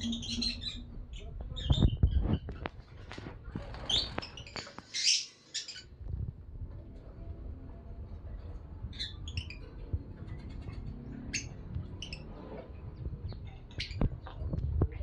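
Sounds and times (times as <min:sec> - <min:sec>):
lovebirds chirping: 0:00.0 - 0:02.5, 0:03.8 - 0:06.0.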